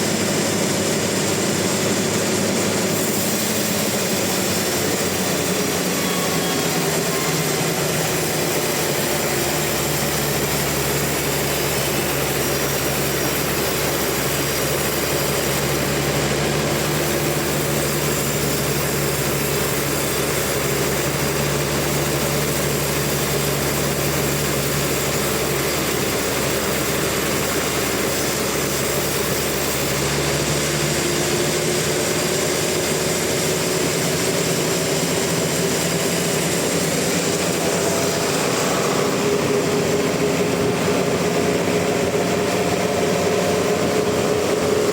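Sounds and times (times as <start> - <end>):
sawmill saw cutting log: 0.0 - 44.9.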